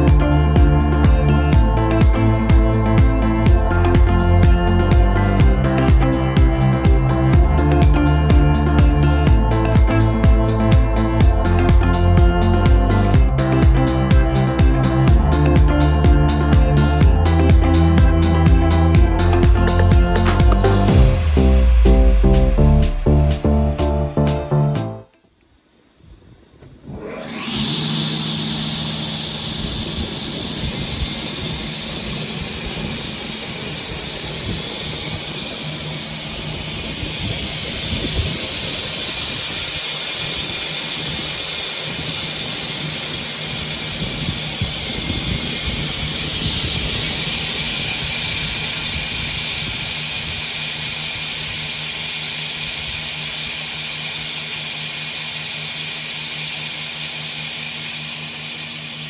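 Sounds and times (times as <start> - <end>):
panel saw machine hum: 0.0 - 25.2, 26.7 - 59.0
spinning blade and dust extraction hiss: 6.2 - 21.8, 25.6 - 59.0.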